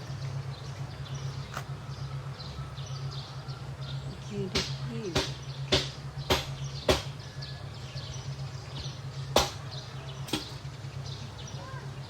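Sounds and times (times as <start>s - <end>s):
sharp knocks: 4.5s - 7.2s, 8.8s - 9.6s, 10.3s - 10.6s.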